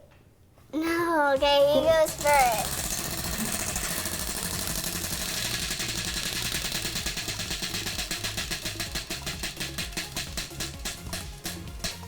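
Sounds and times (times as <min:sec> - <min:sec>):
prize wheel clicking: 0:01.5 - 0:12.0.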